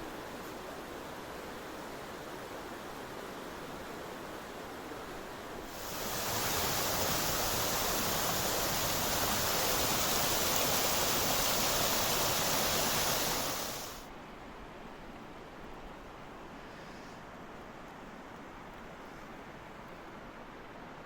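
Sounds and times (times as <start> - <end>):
running water rushing: 5.7 - 14.0.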